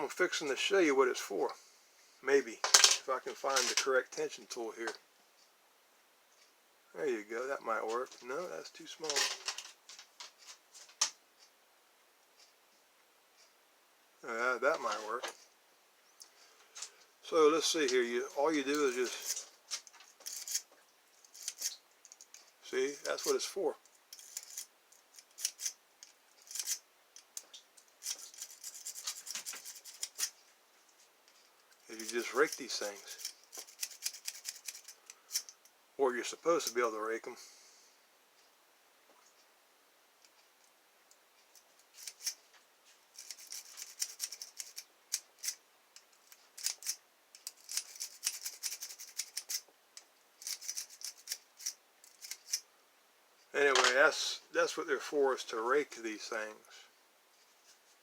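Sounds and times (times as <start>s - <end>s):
lock pick clicking and scratching: 19.2s - 22.4s, 24.1s - 30.3s, 31.7s - 35.6s, 43.2s - 45.6s, 46.2s - 49.6s, 50.4s - 52.6s
lock pick scraping in a lock: 20.2s - 20.7s, 24.2s - 25.8s, 26.4s - 26.8s, 46.3s - 49.6s, 50.4s - 52.6s.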